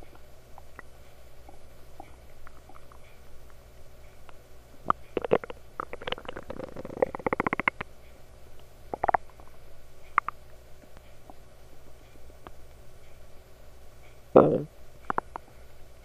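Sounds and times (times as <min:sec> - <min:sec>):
stomach gurgling and popping: 0:00.0 - 0:03.2, 0:04.8 - 0:07.9, 0:08.9 - 0:10.4, 0:14.4 - 0:15.5.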